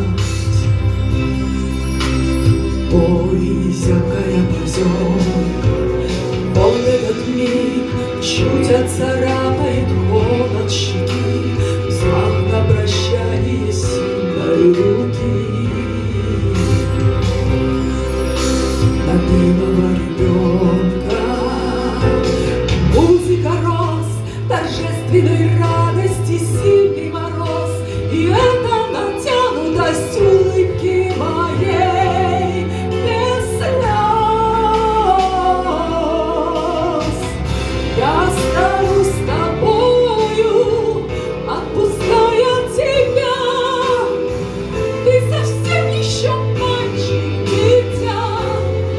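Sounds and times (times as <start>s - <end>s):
woman singing: 0.0s - 1.2s, 2.5s - 48.9s
instrumental accompaniment with bass: 0.0s - 48.9s.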